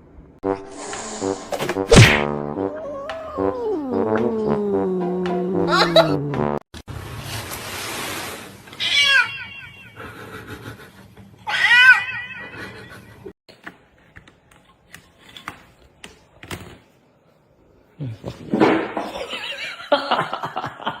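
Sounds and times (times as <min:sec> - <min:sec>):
cat meowing: 0:08.8 - 0:09.9, 0:11.5 - 0:12.4.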